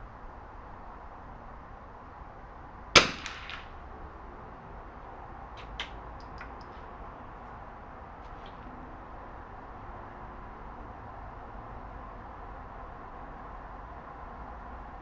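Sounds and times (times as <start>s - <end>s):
rifle shot: 3.0s - 3.8s.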